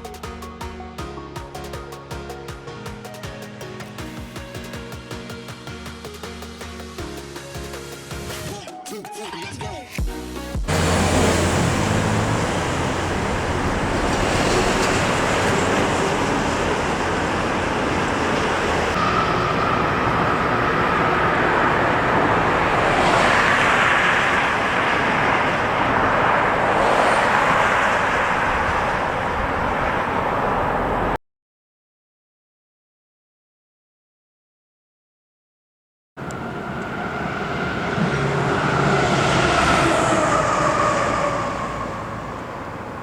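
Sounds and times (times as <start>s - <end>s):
road traffic passing: 10.7s - 31.2s, 36.2s - 43.0s
steady whine: 36.2s - 43.0s.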